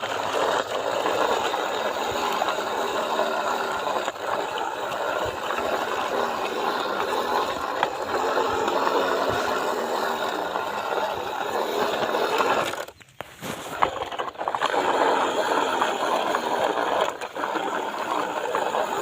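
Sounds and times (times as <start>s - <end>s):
toy truck rattling and grinding: 0.0s - 19.0s.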